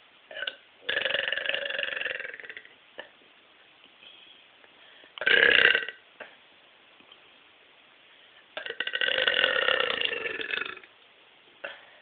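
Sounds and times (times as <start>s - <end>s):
woman belching: 0.3s - 3.1s, 5.2s - 6.0s, 8.6s - 10.9s.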